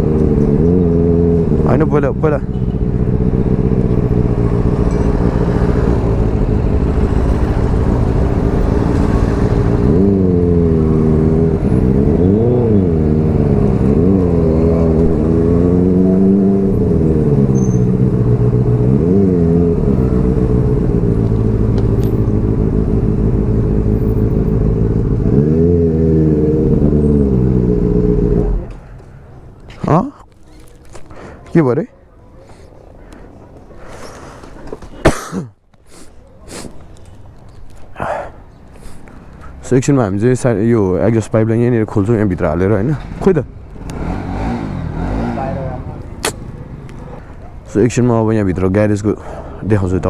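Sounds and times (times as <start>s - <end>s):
motorcycle engine revving: 0.0s - 29.0s, 42.2s - 47.7s.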